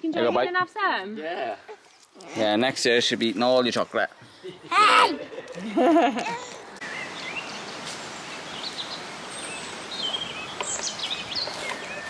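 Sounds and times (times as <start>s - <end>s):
outdoor background hiss: 0.0s - 12.0s
small birds chirping: 6.8s - 12.0s.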